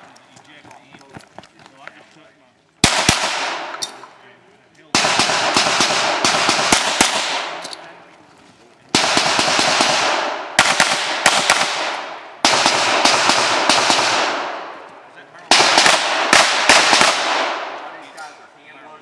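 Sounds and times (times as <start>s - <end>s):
pistol shots echoing: 2.8s - 4.2s, 4.9s - 7.8s, 8.9s - 18.1s.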